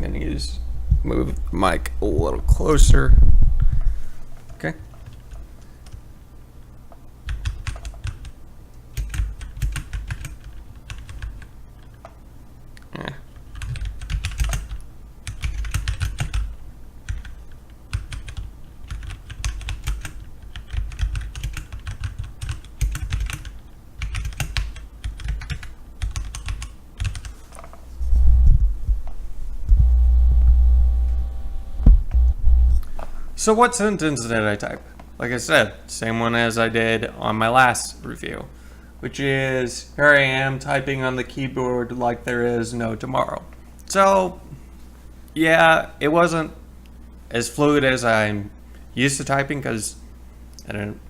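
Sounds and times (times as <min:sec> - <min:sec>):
microphone handling rumble: 0:00.0 - 0:04.3, 0:28.0 - 0:33.4
typing on mechanical keyboard: 0:07.3 - 0:08.3, 0:09.0 - 0:12.0, 0:13.6 - 0:16.5, 0:17.1 - 0:27.7.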